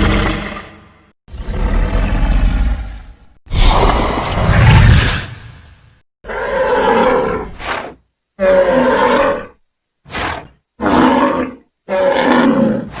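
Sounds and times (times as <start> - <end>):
creature roars and bellows: 6.2 - 13.0.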